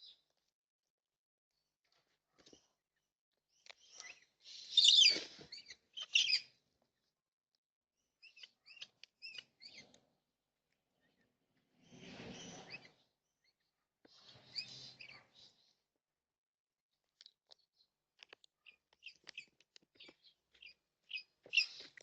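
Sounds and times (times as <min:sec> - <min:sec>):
birds chirping: 0:03.5 - 0:07.1, 0:08.0 - 0:10.1, 0:10.9 - 0:15.8, 0:17.5 - 0:22.0
birds squawking: 0:04.5 - 0:06.4.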